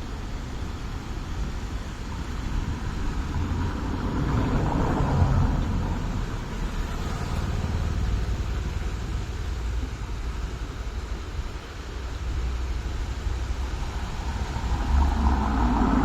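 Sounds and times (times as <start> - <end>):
low rumble of traffic: 0.0 - 16.0
vehicle passing close by: 2.7 - 8.8, 13.6 - 16.0.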